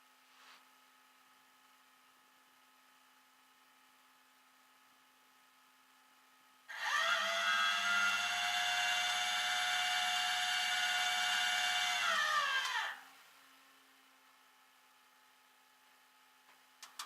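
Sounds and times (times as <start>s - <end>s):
small electric motor whirring: 6.7s - 13.2s.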